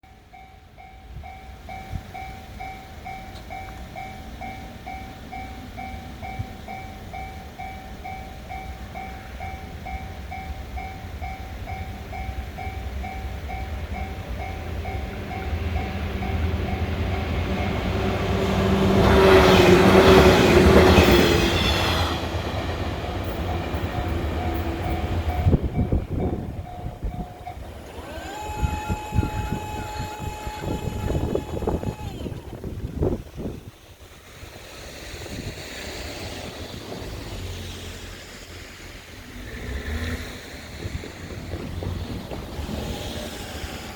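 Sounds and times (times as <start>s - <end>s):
electric train passing: 0.0s - 43.9s
train wheel clatter: 1.7s - 33.6s, 39.6s - 43.9s
level crossing alarm ringing: 23.5s - 32.4s.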